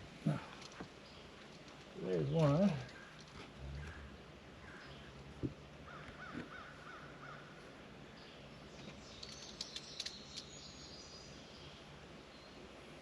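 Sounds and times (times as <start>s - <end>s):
faint birds calling: 0.0s - 13.0s
bird chirps and clicks: 0.6s - 4.0s, 8.7s - 11.2s.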